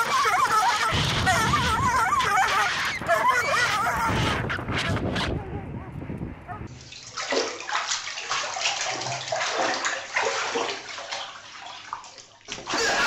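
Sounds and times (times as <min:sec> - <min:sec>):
water running and splashing: 0:06.7 - 0:13.0.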